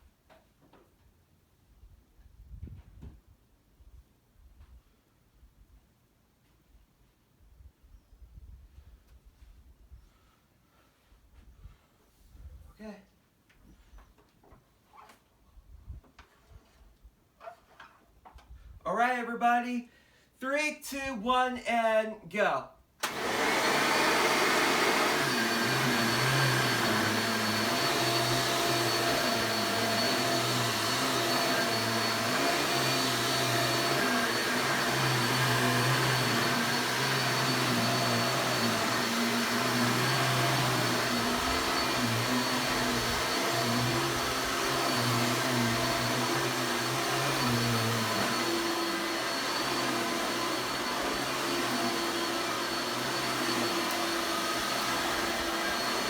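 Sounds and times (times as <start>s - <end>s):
vacuum cleaner running: 23.0s - 56.0s.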